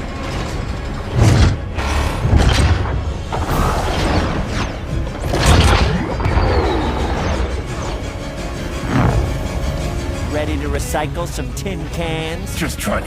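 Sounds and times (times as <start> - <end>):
music with booming hits: 0.0 - 10.3.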